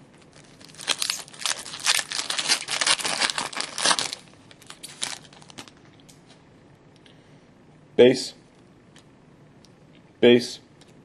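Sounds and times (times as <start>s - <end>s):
plastic wrapper crinkling: 0.2s - 5.8s.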